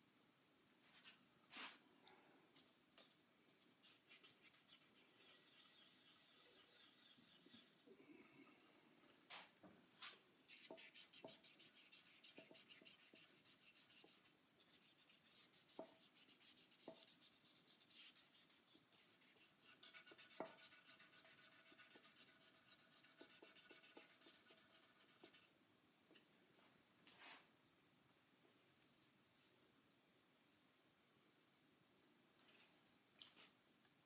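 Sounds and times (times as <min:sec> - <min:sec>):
sandpaper rubbing: 0:03.8 - 0:07.8.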